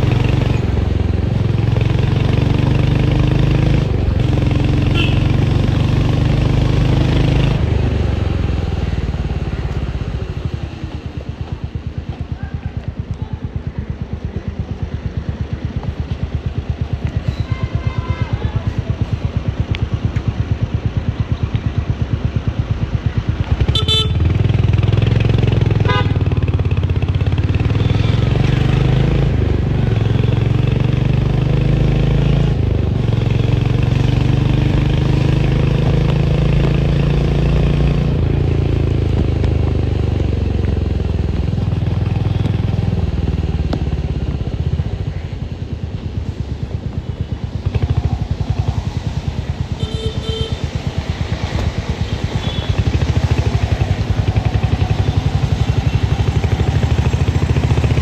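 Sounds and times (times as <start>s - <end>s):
motorcycle accelerating: 0.0s - 58.0s
street traffic noise: 0.0s - 58.0s
motorcycle engine idling: 8.0s - 28.7s, 38.2s - 58.0s.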